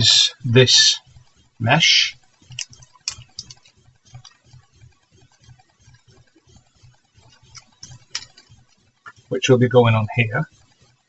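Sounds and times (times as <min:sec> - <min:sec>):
soft regular ticking: 0:00.0 - 0:11.0
clicks of small plastic parts: 0:02.5 - 0:04.4.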